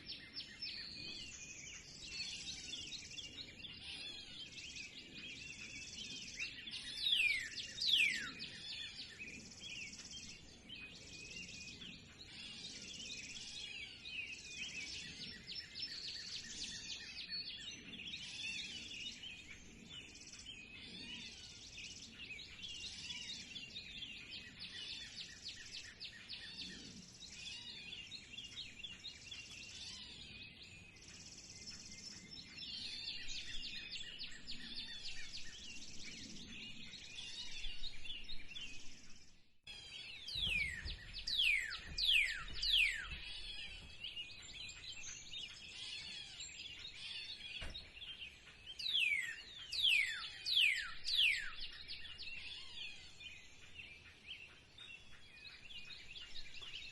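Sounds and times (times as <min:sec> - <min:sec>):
songbirds chirping: 0:00.0 - 0:56.9
bird whistling falling notes: 0:40.2 - 0:43.9.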